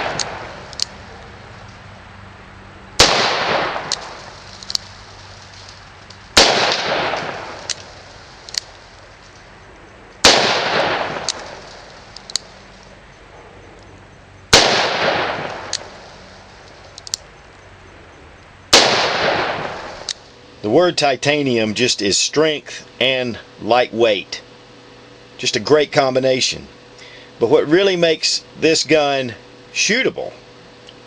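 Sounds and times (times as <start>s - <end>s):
revolver shots echoing: 0.0s - 1.1s, 3.0s - 8.8s, 10.2s - 12.6s, 14.5s - 16.4s, 18.7s - 20.2s
faint sharp clicks: 16.6s - 17.6s.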